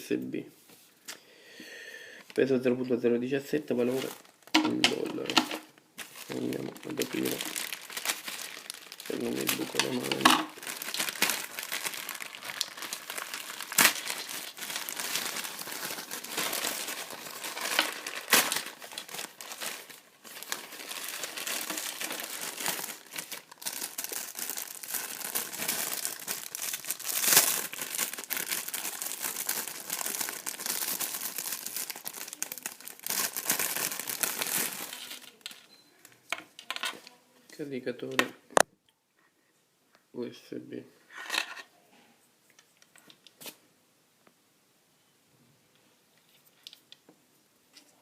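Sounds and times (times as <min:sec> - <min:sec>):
plastic packaging crinkling: 0:03.8 - 0:35.7
sharp plastic crackles: 0:03.9 - 0:35.7.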